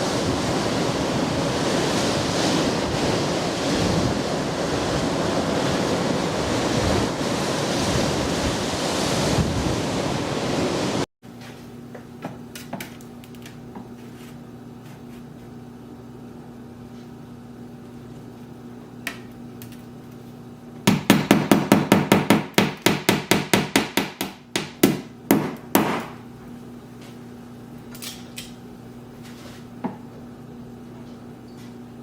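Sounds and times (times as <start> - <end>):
steady low hum: 11.3 - 32.0.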